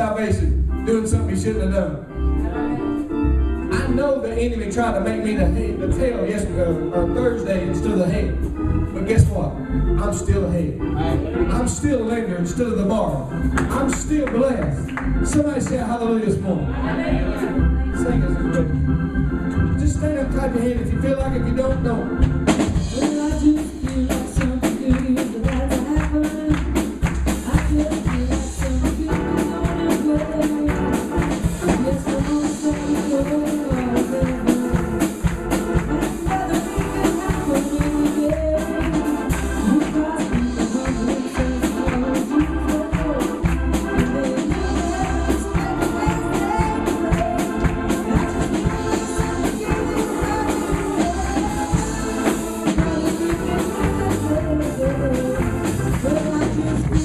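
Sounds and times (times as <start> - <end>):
church praise music: 0.0 - 57.0.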